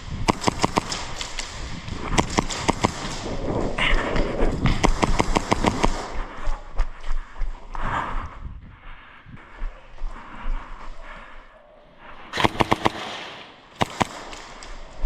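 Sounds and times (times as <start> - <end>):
airsoft guns firing: 0.3 - 3.6, 4.8 - 6.2, 12.4 - 14.7.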